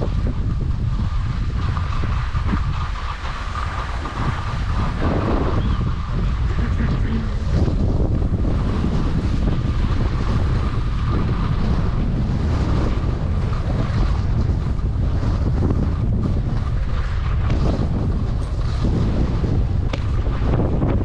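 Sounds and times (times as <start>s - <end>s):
wind rushing over microphone: 0.0s - 21.0s
skis hissing on snow: 2.9s - 7.8s.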